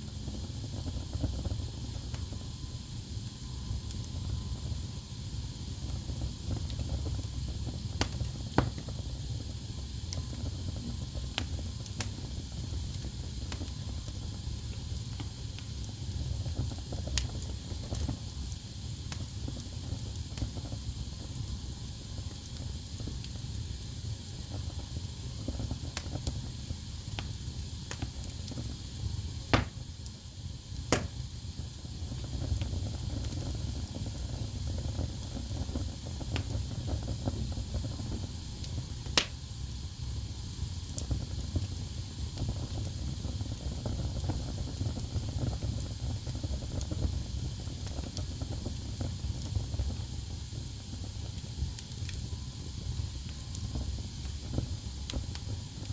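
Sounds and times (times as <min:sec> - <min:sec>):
fire crackling: 0:00.0 - 0:55.9
fire rumbling and hissing: 0:00.0 - 0:55.9
sharp fire pops: 0:05.9 - 0:09.5, 0:27.1 - 0:39.8.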